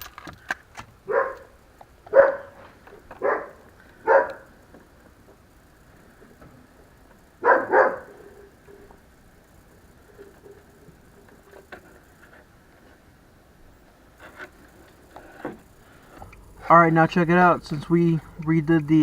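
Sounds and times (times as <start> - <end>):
dog barking: 1.1 - 1.5, 2.1 - 2.6, 3.2 - 4.5, 7.4 - 8.3.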